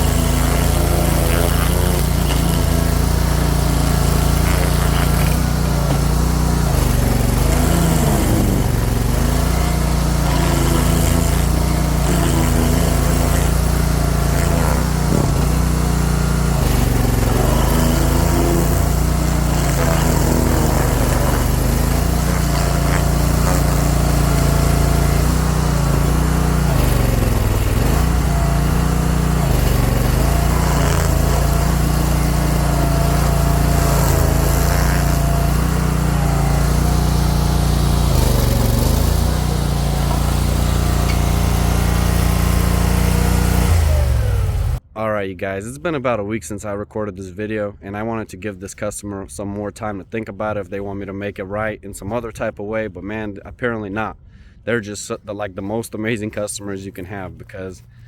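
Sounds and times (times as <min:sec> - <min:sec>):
stump grinder engine running: 0:00.0 - 0:44.8.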